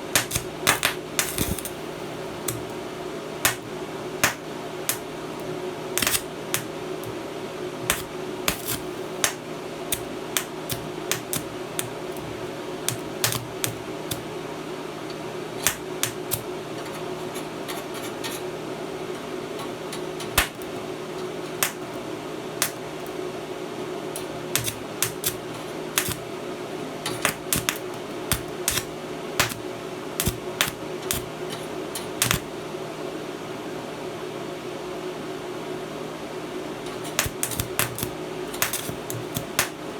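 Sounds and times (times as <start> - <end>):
arc welding crackle and hiss: 0.0 - 32.7, 36.7 - 39.9
constant hum: 0.0 - 33.1, 36.1 - 39.9.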